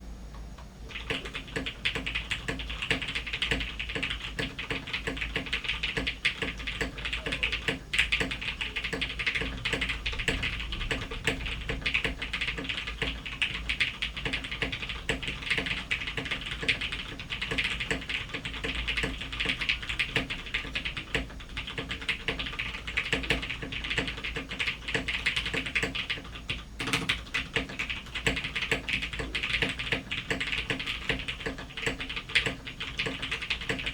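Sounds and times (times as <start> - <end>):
fast typing on mechanical keyboard: 0.9 - 33.9.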